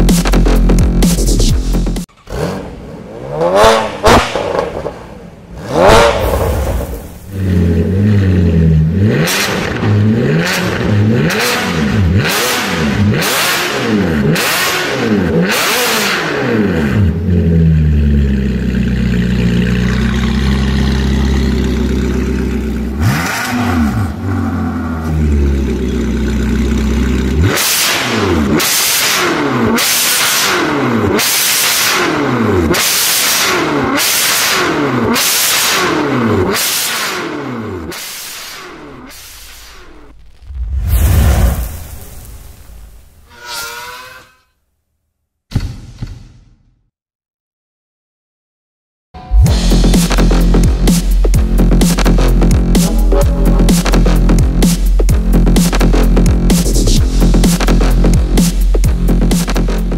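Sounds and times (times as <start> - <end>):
car engine revving in blips: 0.0 - 40.2, 49.3 - 59.9
car engine idling: 17.1 - 27.4, 49.5 - 59.9.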